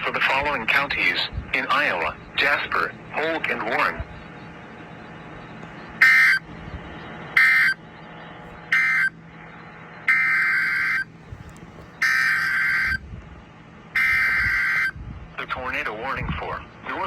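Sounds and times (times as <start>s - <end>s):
warbling two-tone data bursts: 0.6s - 11.1s.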